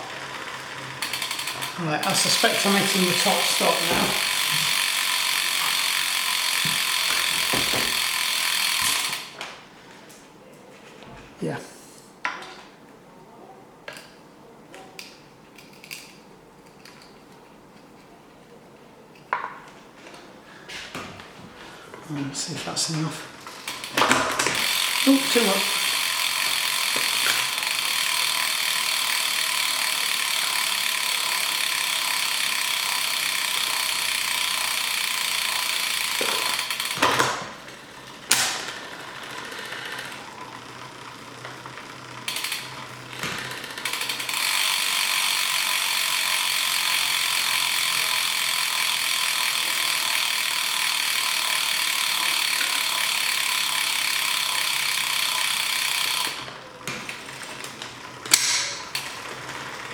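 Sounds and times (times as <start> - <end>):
bicycle chain running over sprockets: 0.0 - 9.4, 22.3 - 59.9.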